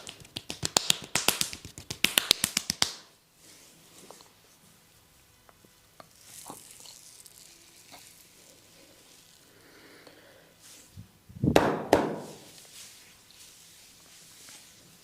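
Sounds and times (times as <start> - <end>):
hands rubbing skin: 0.0 - 3.1
loud slaps: 0.0 - 3.1, 11.5 - 12.5.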